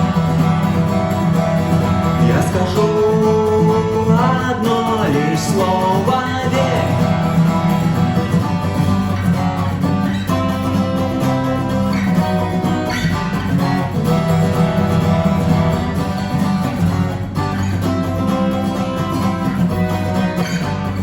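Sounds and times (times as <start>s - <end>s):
acoustic guitar strumming chords: 0.0s - 21.0s.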